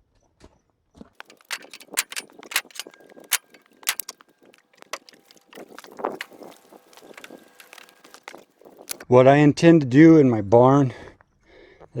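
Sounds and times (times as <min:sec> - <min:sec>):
sharp irregular clicks and knocks: 0:01.2 - 0:09.0.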